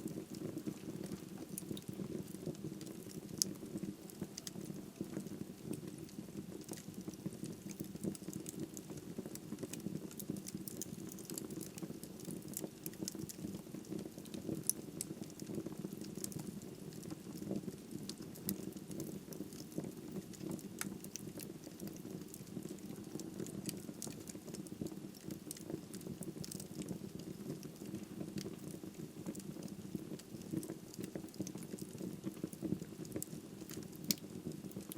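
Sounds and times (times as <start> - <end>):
wood fire crackling: 0.0 - 34.9.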